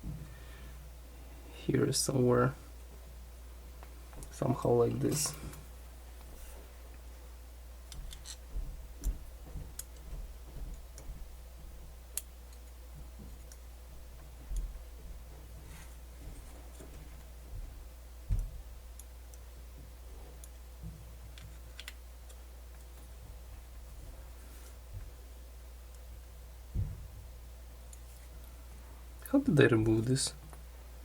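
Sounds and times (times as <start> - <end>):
steady low hum: 0.0 - 31.0
tape mechanism parts clicking: 7.9 - 8.4.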